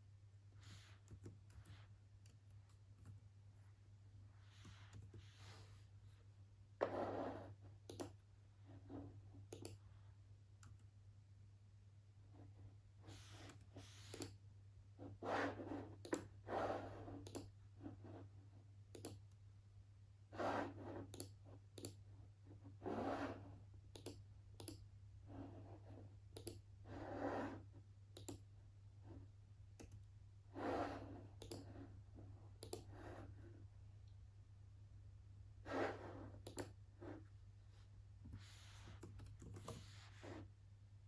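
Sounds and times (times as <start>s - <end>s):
mouse and keyboard clicks: 7.8s - 8.2s, 9.5s - 9.8s, 13.3s - 14.4s, 17.2s - 17.5s, 18.9s - 19.3s, 21.1s - 22.0s, 23.9s - 24.8s, 26.4s - 26.6s, 28.2s - 28.4s, 31.4s - 31.7s, 32.6s - 32.9s, 36.4s - 36.8s, 39.0s - 40.0s.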